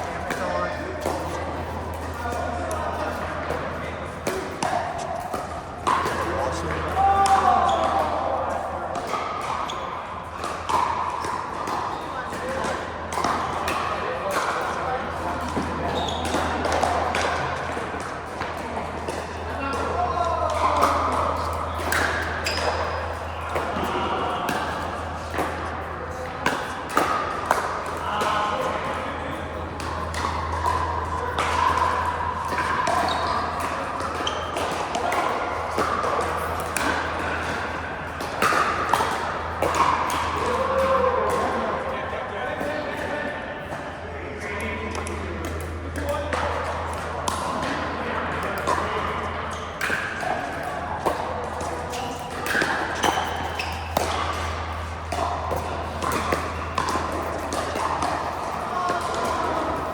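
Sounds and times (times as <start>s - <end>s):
paddles hitting plastic ball: 49.8s - 59.9s.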